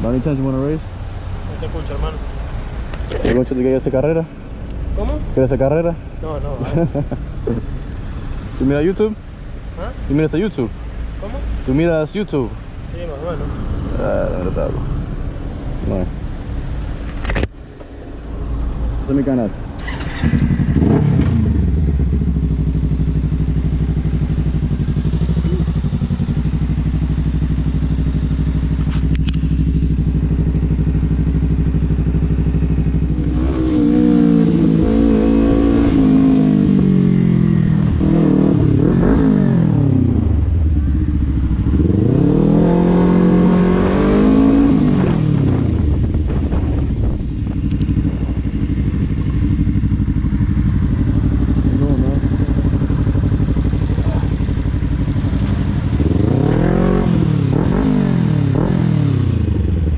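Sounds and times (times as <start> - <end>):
motorcycle engine accelerating: 19.4 - 59.9.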